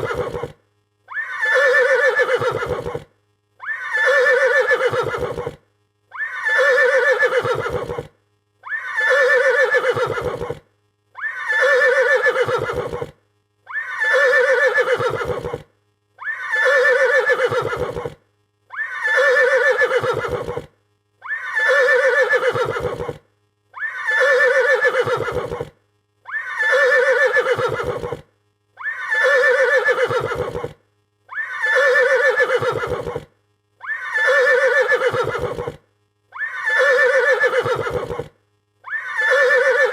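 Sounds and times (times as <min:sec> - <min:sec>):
horse neighing: 0:00.0 - 0:10.6, 0:11.2 - 0:13.1, 0:13.7 - 0:15.6, 0:16.2 - 0:23.2, 0:23.8 - 0:25.7, 0:26.3 - 0:28.2, 0:28.8 - 0:35.8, 0:36.4 - 0:38.3, 0:38.9 - 0:39.9.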